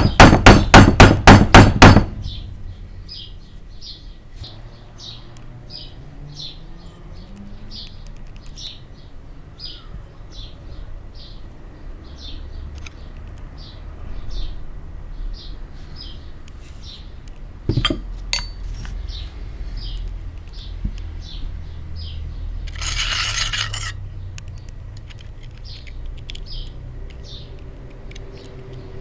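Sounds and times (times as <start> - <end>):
loud hammer blows: 0.0 - 2.2.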